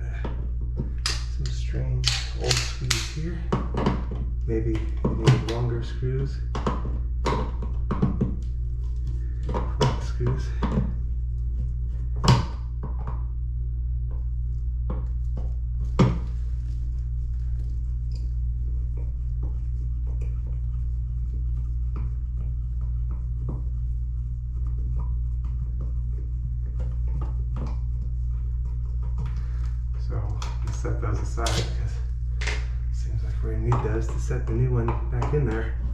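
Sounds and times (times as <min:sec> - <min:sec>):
steady low hum: 0:00.0 - 0:35.9
small hardware clicking: 0:01.1 - 0:03.2.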